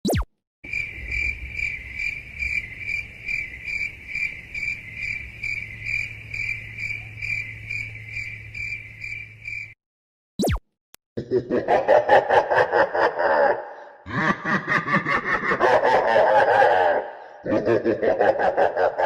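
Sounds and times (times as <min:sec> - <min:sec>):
crickets chirping: 0:00.7 - 0:09.8.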